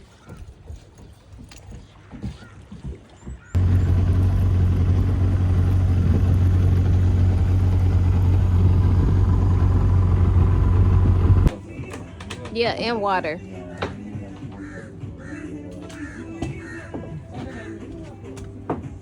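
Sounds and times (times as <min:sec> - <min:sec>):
boat engine running: 0:03.5 - 0:11.6.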